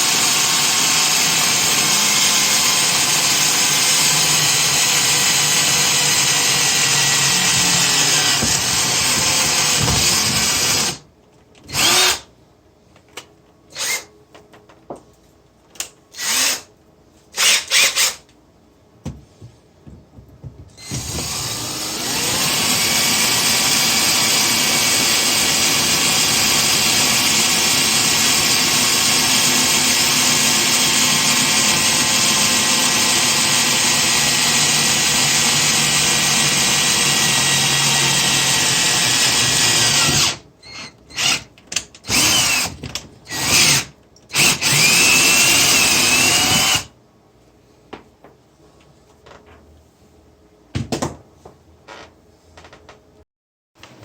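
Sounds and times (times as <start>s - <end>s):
electric power drill running: 0.0s - 11.0s, 11.7s - 12.3s, 13.8s - 14.1s, 16.2s - 16.7s, 17.4s - 18.2s, 20.8s - 41.5s, 42.1s - 46.9s.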